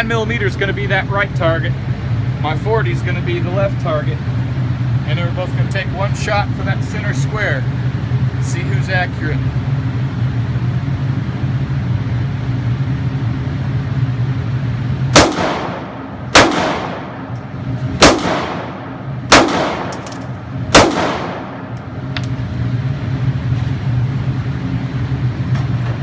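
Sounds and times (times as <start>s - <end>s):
steady low hum: 0.0s - 26.0s
handgun shots with echo: 15.2s - 17.3s, 18.0s - 22.4s.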